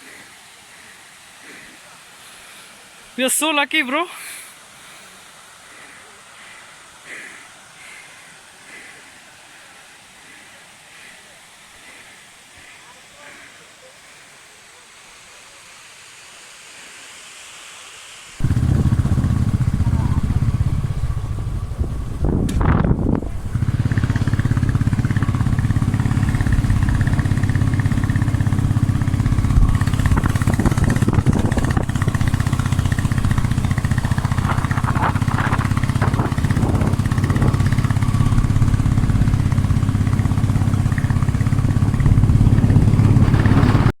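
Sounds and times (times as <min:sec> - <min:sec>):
faint hiss: 0:00.0 - 0:43.9
motorcycle engine running: 0:18.4 - 0:44.0.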